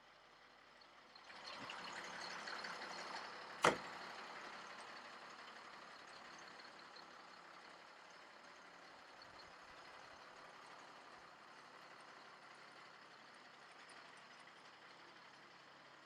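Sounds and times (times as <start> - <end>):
sharp knock: 3.6 - 3.9.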